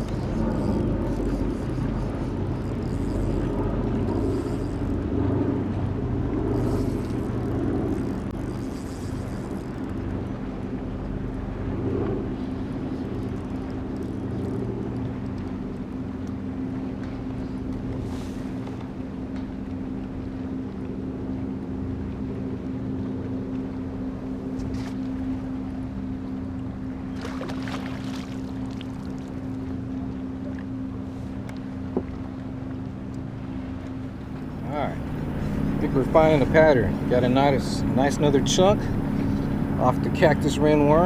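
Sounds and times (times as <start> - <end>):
motorboat engine droning: 0.0 - 41.0.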